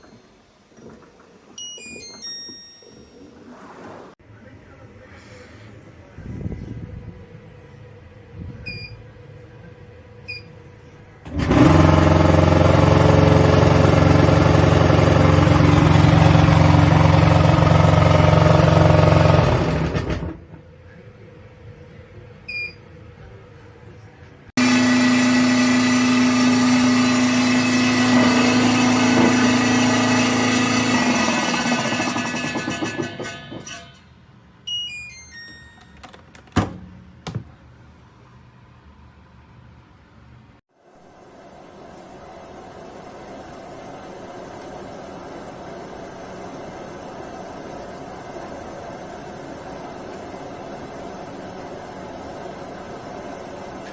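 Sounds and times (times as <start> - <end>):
dryer touch-panel beeps: 8.6 - 9.0, 10.3 - 10.6, 22.5 - 22.8, 34.7 - 36.2
dryer fan motor humming: 9.7 - 21.4, 24.6 - 33.9, 40.9 - 53.9.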